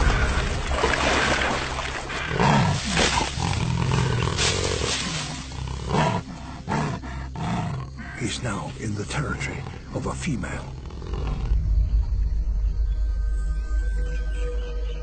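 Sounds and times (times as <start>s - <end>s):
jaguar roaring: 2.2s - 8.4s, 9.1s - 11.6s.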